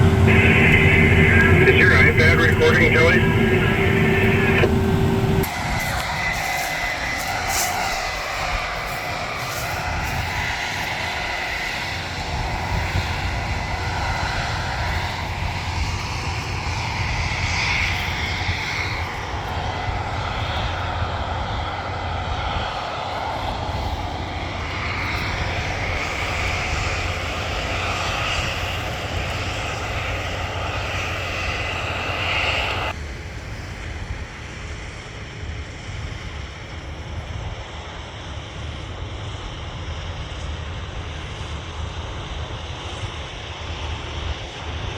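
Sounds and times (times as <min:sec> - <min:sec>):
harvester engine rumbling: 0:00.0 - 0:05.5.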